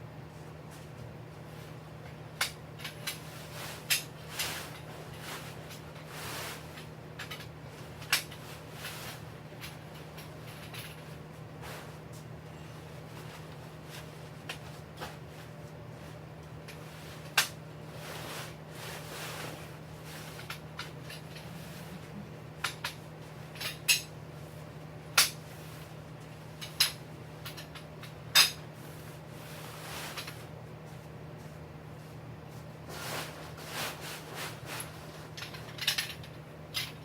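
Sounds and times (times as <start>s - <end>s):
steady low hum: 0.0s - 37.0s
gear clacking and clinking: 34.7s - 37.0s.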